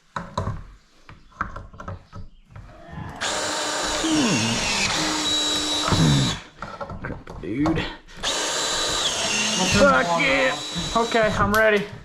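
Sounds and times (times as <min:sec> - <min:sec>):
power drill running: 0:03.1 - 0:06.5, 0:08.2 - 0:11.7.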